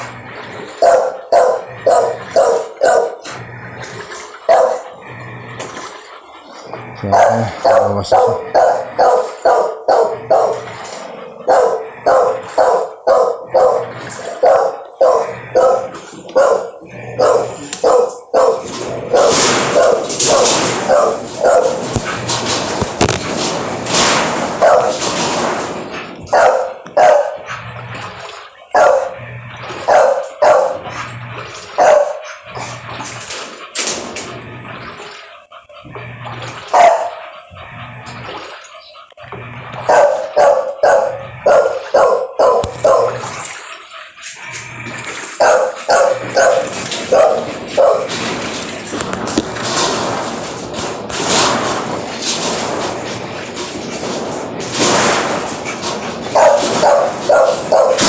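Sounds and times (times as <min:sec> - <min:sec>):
dog barking: 0:00.6 - 0:05.2, 0:06.8 - 0:25.6, 0:26.2 - 0:33.0, 0:36.6 - 0:37.4, 0:39.7 - 0:43.7, 0:45.1 - 0:50.0, 0:54.0 - 0:58.0.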